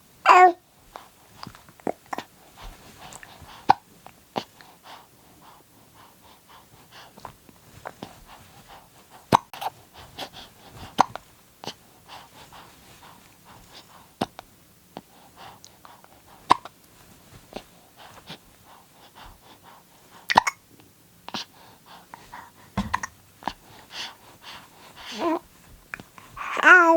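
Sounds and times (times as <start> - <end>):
baby hiccuping: 20.3 - 20.6, 22.8 - 23.2
small mouth clicks: 20.3 - 20.6.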